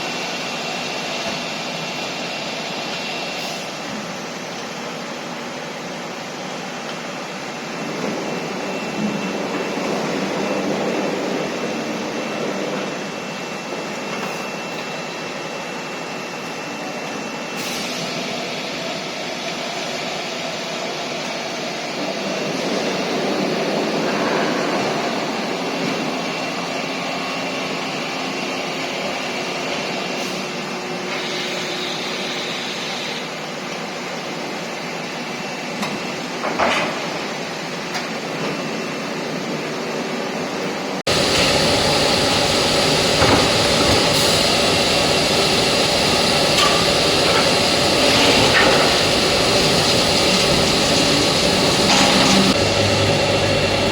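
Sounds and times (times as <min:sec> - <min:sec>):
hydraulic press running: 0:40.4 - 0:53.9.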